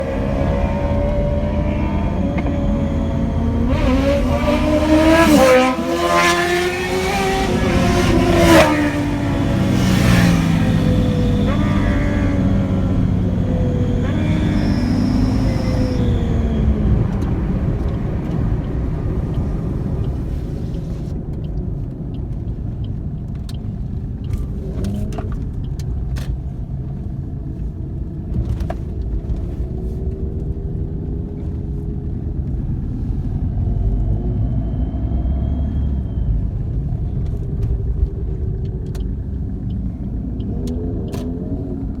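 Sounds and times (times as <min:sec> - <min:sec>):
faint engine notes: 0:00.0 - 0:21.6
road and wind noise: 0:00.0 - 0:42.0
vehicle rumble: 0:00.0 - 0:42.0.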